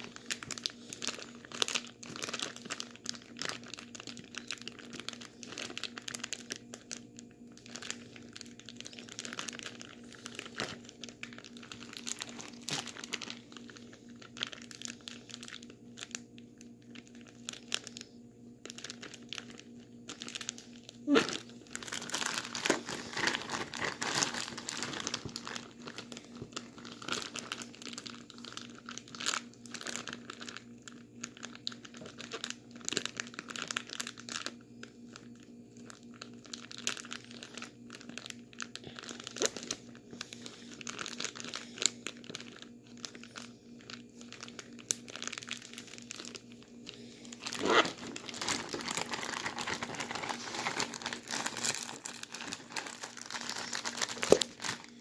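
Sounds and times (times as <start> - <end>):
plastic bag crinkling: 0.0 - 55.0.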